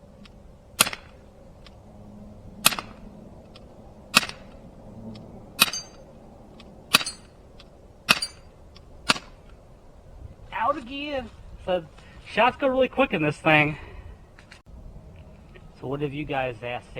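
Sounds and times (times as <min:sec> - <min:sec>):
air pistol shots popping: 0:00.8 - 0:01.2.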